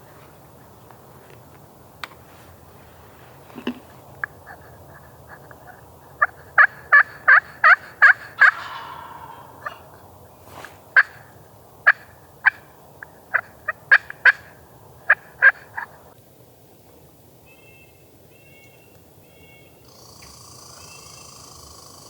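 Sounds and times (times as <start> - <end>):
wild turkeys calling: 4.0 - 16.0.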